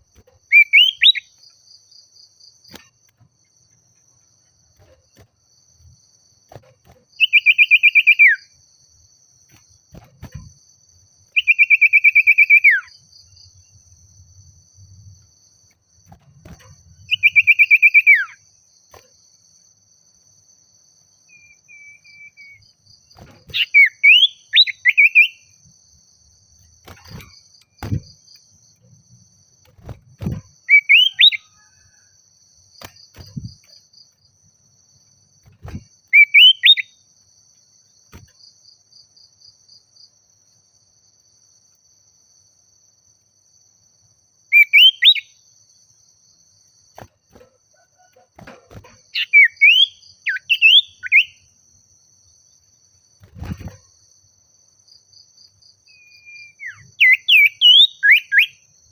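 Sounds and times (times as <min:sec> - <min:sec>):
bird whistled calls: 0:00.6 - 0:01.3, 0:11.4 - 0:12.9, 0:17.1 - 0:18.4, 0:21.3 - 0:22.6, 0:36.2 - 0:36.9, 0:49.2 - 0:51.4, 0:55.9 - 0:58.6.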